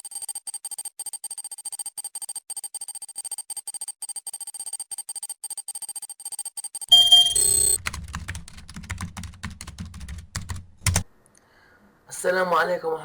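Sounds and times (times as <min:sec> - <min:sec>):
high electronic ticks: 0:00.0 - 0:07.8
computer keyboard typing: 0:06.4 - 0:11.1
electronic sound effect: 0:06.9 - 0:07.8.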